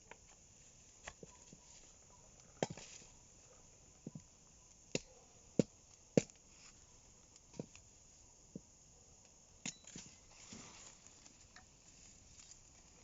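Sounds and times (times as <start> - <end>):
firewood knocking and cracking: 4.9 - 6.4, 7.4 - 7.8.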